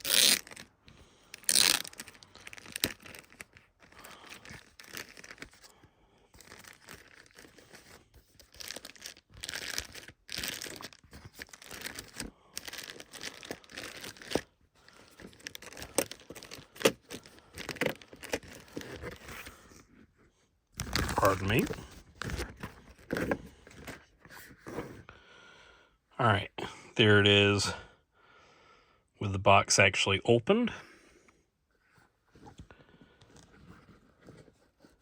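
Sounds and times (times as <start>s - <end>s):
cardboard packaging tearing: 0.0s - 0.7s, 1.4s - 5.7s, 6.4s - 19.6s, 20.8s - 24.1s.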